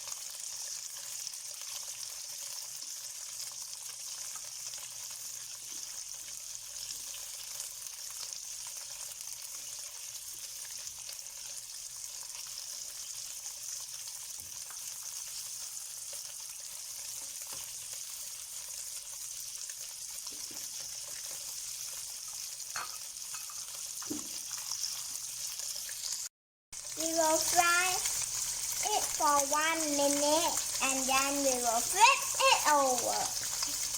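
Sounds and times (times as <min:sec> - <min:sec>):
tofu sizzling in hot oil: 0:00.0 - 0:33.9
oil crackles: 0:24.1 - 0:33.9.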